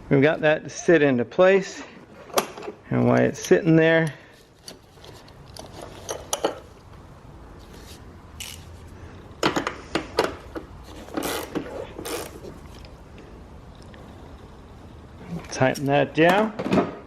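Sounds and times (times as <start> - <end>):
ratchet wrench clicking: 8.4 - 8.7, 11.2 - 12.4.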